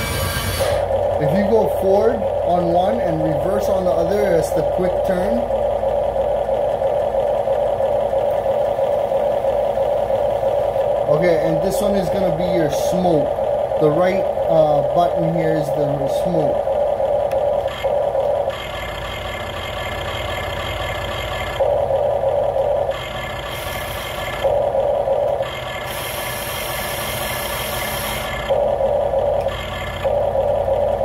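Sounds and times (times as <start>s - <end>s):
electric motors whirring: 0.0s - 31.0s
simulated engine sound from speaker: 0.0s - 31.0s.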